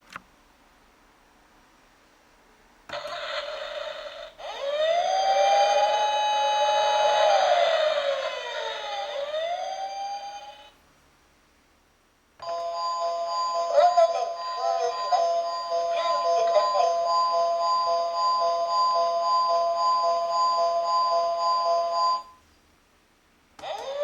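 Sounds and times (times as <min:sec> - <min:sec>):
toy police siren wailing: 0:02.9 - 0:10.7, 0:13.6 - 0:22.2, 0:23.6 - 0:24.0.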